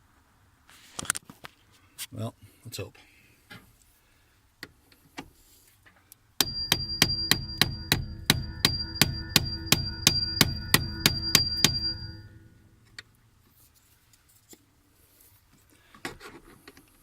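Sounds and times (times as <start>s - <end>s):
rhythmic metal knocking: 6.4s - 12.7s
metallic grinding din: 6.4s - 12.8s.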